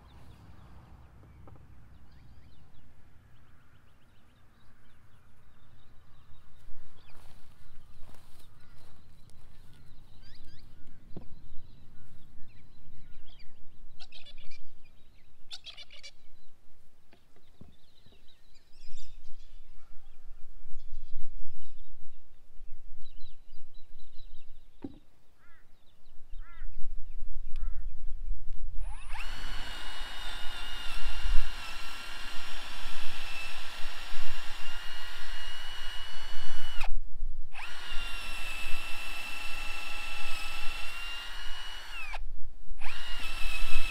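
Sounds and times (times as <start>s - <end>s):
faint bird calls: 0.0s - 16.5s, 24.8s - 26.8s, 27.4s - 28.0s
low rumble of wind: 0.0s - 43.9s
cordless drill whining: 28.8s - 43.9s.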